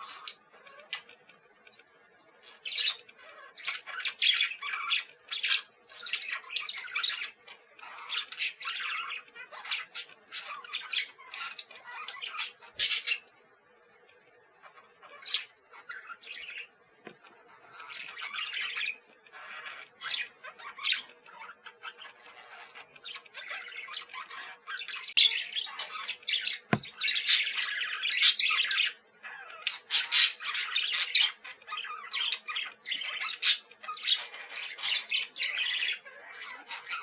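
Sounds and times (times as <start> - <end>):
budgies chirping: 0.0 - 1.8, 2.4 - 13.6, 14.6 - 37.0.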